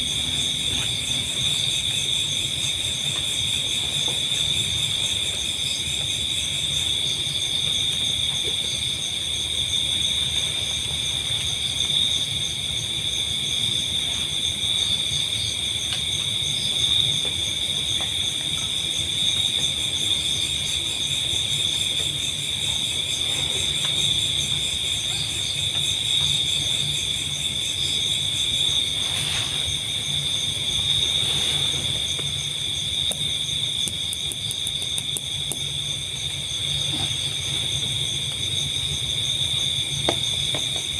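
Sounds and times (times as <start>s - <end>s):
night insects shrilling: 20.0s - 40.0s.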